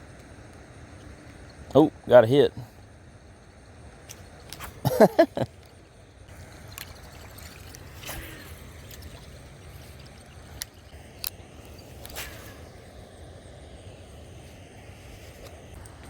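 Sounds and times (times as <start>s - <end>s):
water running: 4.1s - 13.2s.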